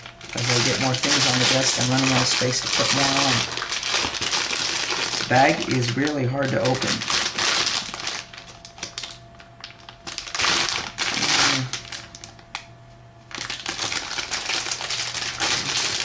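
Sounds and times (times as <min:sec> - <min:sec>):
plastic bag crinkling: 0:00.0 - 0:12.7, 0:13.3 - 0:16.0.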